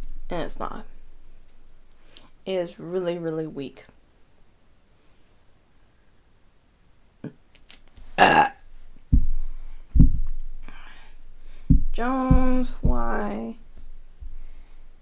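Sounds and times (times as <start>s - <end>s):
woman burping: 8.2s - 8.6s
breathy exhale: 10.6s - 11.7s.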